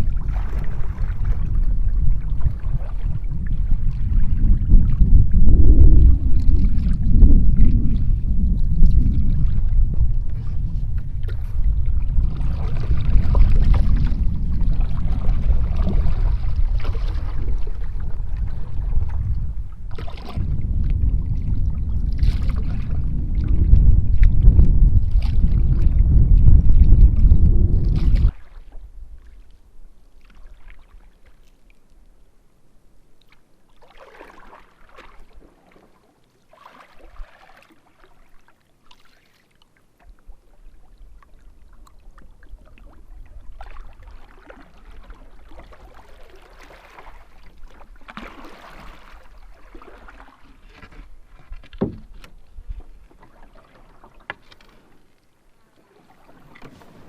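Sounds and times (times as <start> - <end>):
wind rumble on microphone: 0.0 - 30.0, 40.1 - 54.6
paddle splashes: 0.0 - 32.1, 33.2 - 57.0
calm water: 0.0 - 57.0.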